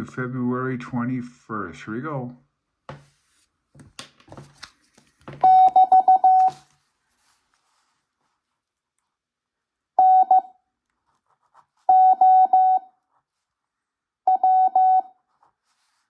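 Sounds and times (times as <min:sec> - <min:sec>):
morse code beeps: 0:05.4 - 0:06.6, 0:10.0 - 0:10.5, 0:11.9 - 0:12.9, 0:14.3 - 0:15.1.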